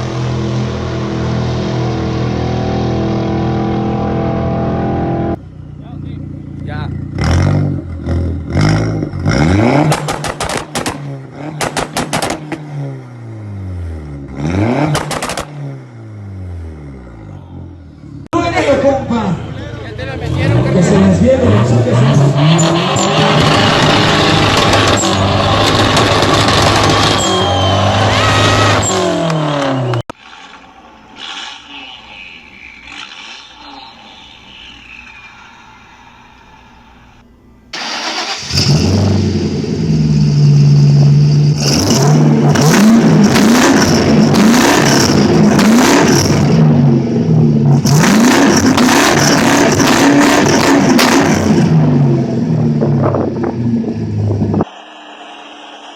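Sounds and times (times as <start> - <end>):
car engine revving: 0.0 - 36.2, 37.8 - 55.9
exhaust crackling pops and bangs: 9.8 - 12.7, 14.8 - 15.6, 23.5 - 27.3
faint falling whine: 30.6 - 37.7, 54.4 - 55.9
faint rushing swells: 53.9 - 55.9.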